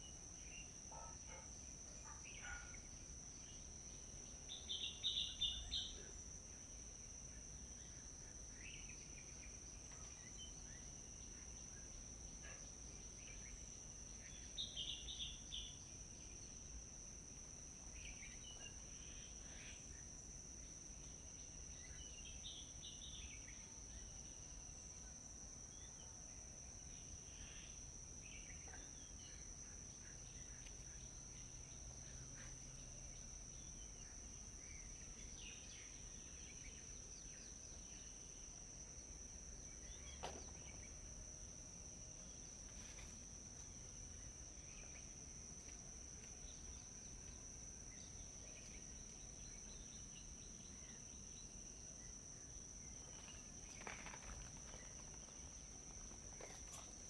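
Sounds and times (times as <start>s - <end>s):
insects droning trill: 0.0s - 57.0s
faint bird chirps: 4.3s - 6.1s.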